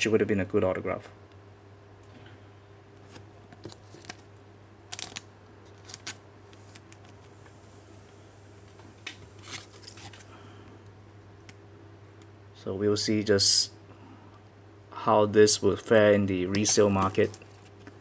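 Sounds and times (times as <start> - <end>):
faint low hum: 0.0 - 18.0
trading cards rustling and clicking: 3.0 - 4.3, 4.9 - 7.3, 9.1 - 10.3, 16.5 - 18.0.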